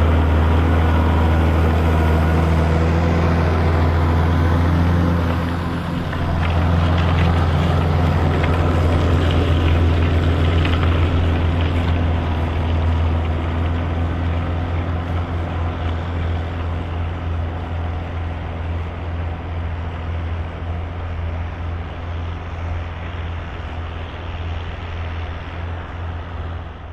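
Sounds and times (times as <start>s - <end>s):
tractor diesel engine running: 0.0s - 26.9s.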